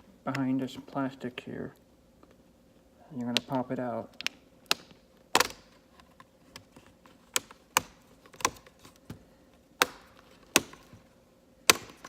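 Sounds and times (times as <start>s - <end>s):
plastic clips popping loose: 3.4s - 5.8s, 7.3s - 9.2s, 9.8s - 10.9s.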